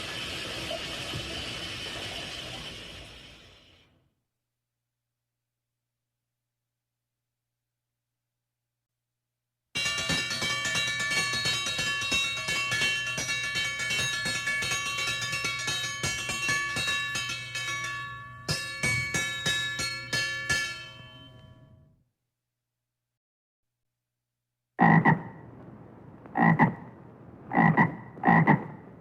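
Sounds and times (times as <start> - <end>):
rapid percussion strikes: 9.8 - 20.9
bell-like ringing tones: 9.8 - 22.0.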